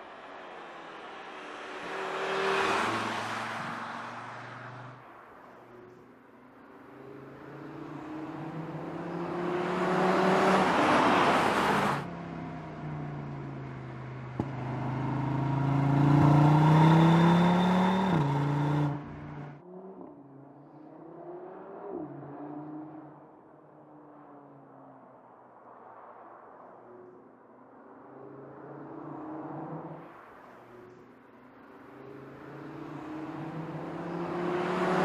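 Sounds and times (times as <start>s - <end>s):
car engine accelerating: 6.9s - 12.1s, 12.8s - 20.1s, 32.0s - 35.0s.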